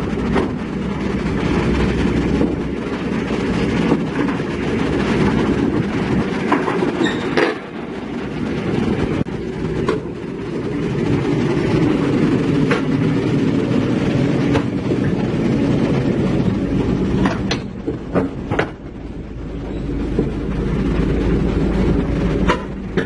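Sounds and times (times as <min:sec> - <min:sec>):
heavy diesel machinery rumbling: 0:00.0 - 0:23.0
metallic clanks and knocks: 0:17.1 - 0:19.0, 0:22.4 - 0:23.0.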